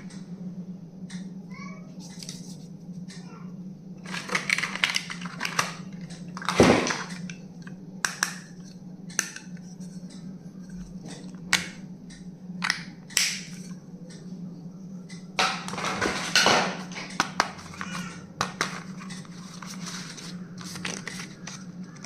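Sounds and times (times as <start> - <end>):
steady low hum: 0.0 - 22.0
packaging rustling and crinkling: 4.0 - 7.2, 18.5 - 22.0.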